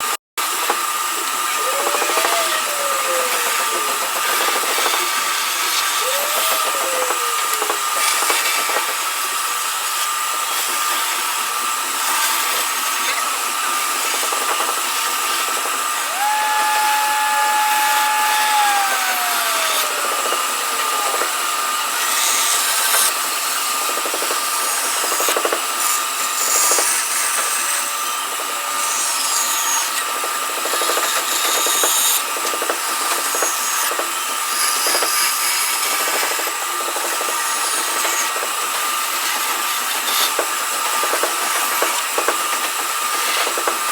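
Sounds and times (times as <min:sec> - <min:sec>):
woodworking machine motor whine: 0:00.6 - 0:36.2
wood cutting and rubbing: 0:01.3 - 0:09.2, 0:14.1 - 0:30.1.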